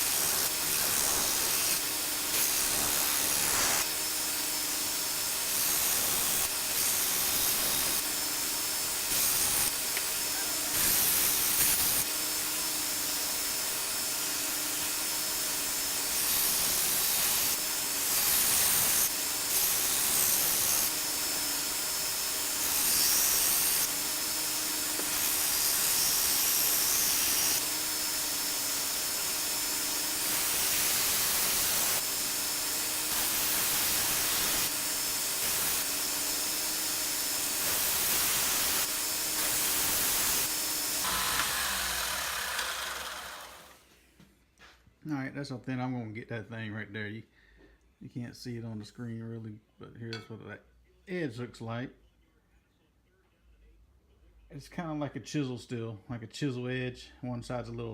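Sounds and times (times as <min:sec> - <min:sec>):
blade grinding on belt: 0:00.0 - 0:12.1, 0:33.1 - 0:43.8
belt sander humming: 0:38.4 - 0:43.8.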